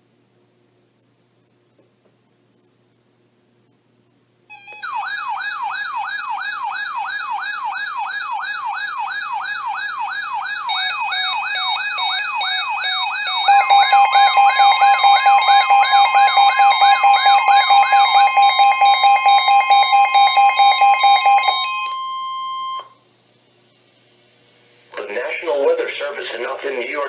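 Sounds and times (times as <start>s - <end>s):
steady alert tones: 4.5s - 22.8s
electronic siren alarm sweeping: 4.5s - 23.0s
two-tone alarm: 4.5s - 23.0s.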